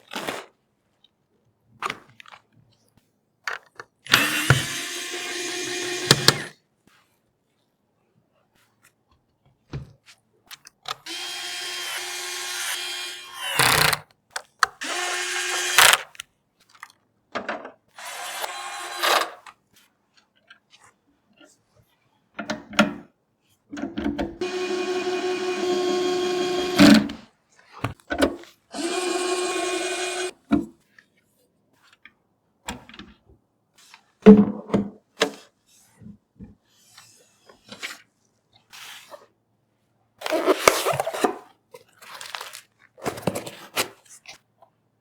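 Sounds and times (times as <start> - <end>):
electric screwdriver motor whirring: 4.1 - 6.5, 11.0 - 14.0, 14.8 - 16.1, 18.0 - 19.4, 24.4 - 27.1, 28.7 - 30.3.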